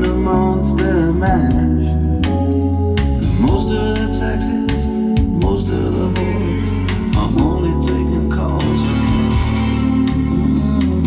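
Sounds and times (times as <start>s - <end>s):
guitar: 0.0s - 11.0s
organ chords: 0.0s - 11.0s
drum hits: 4.7s - 5.7s.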